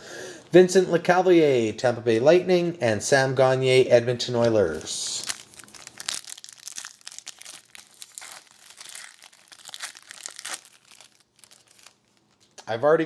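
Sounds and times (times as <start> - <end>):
foil wrapper tearing and crinkling: 4.7 - 12.6.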